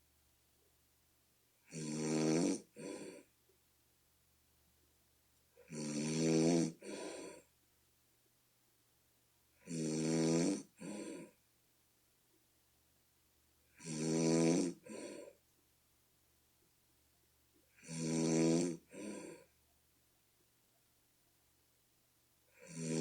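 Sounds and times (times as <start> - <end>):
person snoring deeply: 5.7 - 7.4, 9.7 - 11.3, 13.8 - 15.3, 17.8 - 19.5, 22.6 - 23.0.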